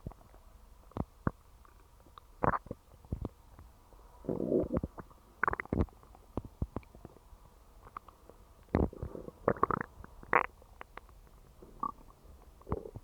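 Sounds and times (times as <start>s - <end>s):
stomach growling and gurgling: 2.4s - 3.4s, 4.2s - 7.1s, 8.7s - 13.0s.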